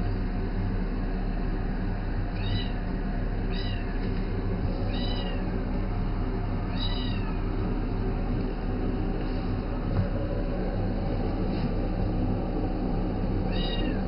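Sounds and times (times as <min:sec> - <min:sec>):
steady low hum: 0:00.0 - 0:14.0
cat meowing: 0:02.4 - 0:02.8, 0:03.5 - 0:04.0, 0:04.9 - 0:05.4, 0:06.7 - 0:07.4, 0:13.5 - 0:14.0.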